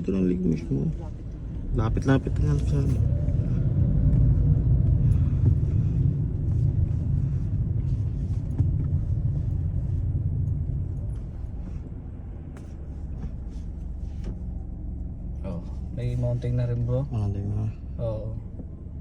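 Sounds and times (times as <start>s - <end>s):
car interior road and engine rumble: 0.0s - 19.0s.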